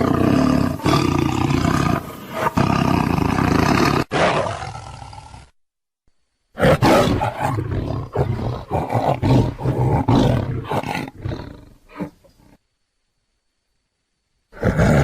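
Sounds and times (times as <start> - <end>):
tiger roaring: 0.0 - 5.5, 6.6 - 12.2.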